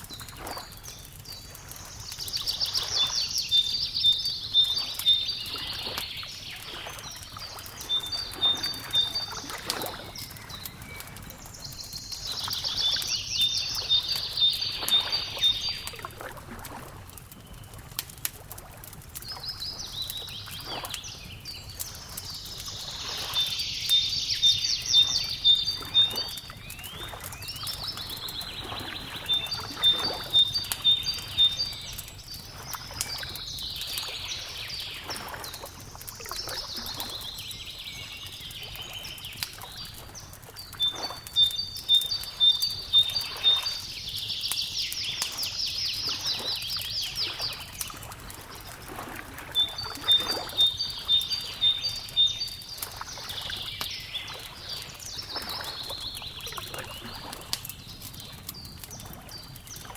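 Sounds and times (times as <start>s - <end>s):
wood fire crackling: 0.0s - 59.9s
songbird trilling: 2.3s - 7.2s, 7.8s - 16.0s, 19.3s - 35.1s, 40.8s - 47.7s, 49.6s - 52.8s
fire pops: 9.4s - 22.8s, 54.9s - 59.9s.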